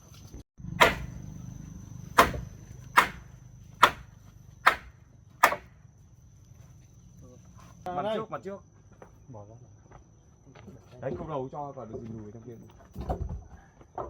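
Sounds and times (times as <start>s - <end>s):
high insect buzz: 0.1s - 7.9s
hammer blows on timber: 0.8s - 1.4s, 2.1s - 5.7s.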